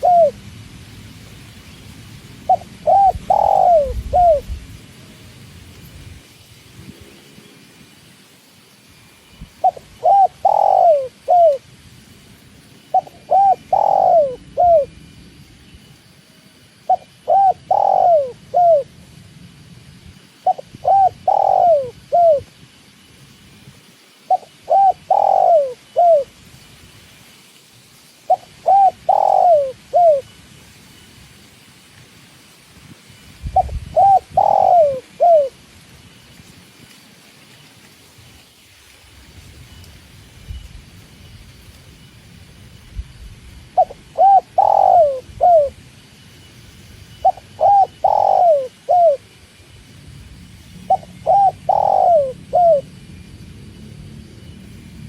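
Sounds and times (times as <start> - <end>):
dove cooing: 0.0 - 0.4, 2.4 - 4.6, 9.6 - 11.6, 12.9 - 15.0, 16.9 - 18.9, 20.4 - 22.4, 24.3 - 26.3, 28.3 - 30.3, 33.5 - 35.6, 43.8 - 45.8, 47.2 - 49.3, 50.9 - 52.9.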